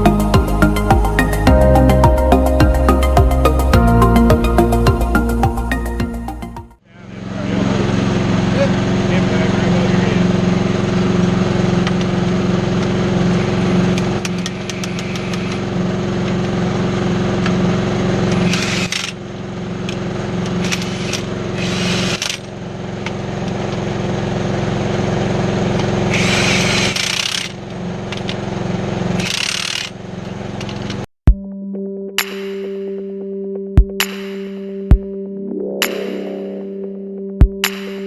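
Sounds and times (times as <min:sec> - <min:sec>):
machine engine running: 0:07.1 - 0:18.4.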